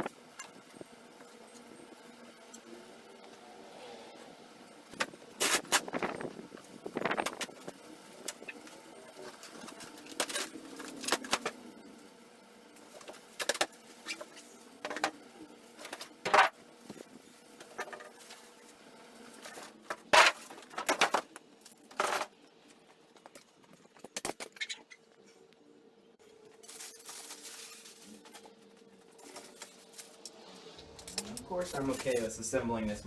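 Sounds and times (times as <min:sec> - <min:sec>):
faint steady hum: 0:00.0 - 0:33.0
packaging rustling and scraping: 0:04.9 - 0:12.0, 0:12.8 - 0:24.9, 0:26.4 - 0:32.3.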